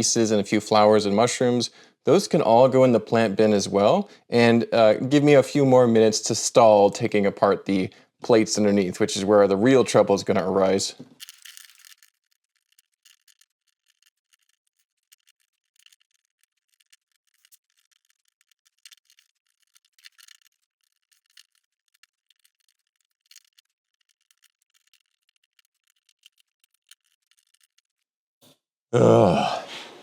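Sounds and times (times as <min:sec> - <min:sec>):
plastic pieces clicking and clattering: 0:11.1 - 0:28.1.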